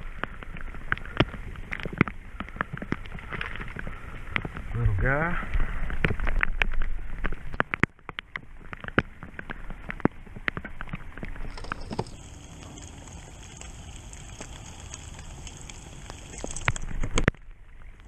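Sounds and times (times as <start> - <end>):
raindrops tapping: 0.0 - 18.0
steady hiss of rainfall: 11.4 - 18.0.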